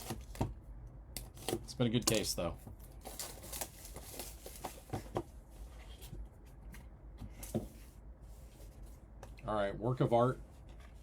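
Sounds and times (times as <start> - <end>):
trading cards and packaging rustling: 1.2 - 6.3.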